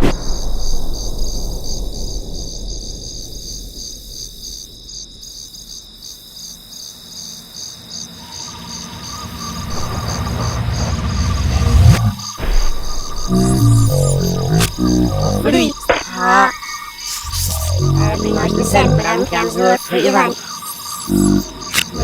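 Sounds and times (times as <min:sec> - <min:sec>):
low explosion rumble: 0:00.0 - 0:05.2
crickets chirping: 0:00.0 - 0:22.0.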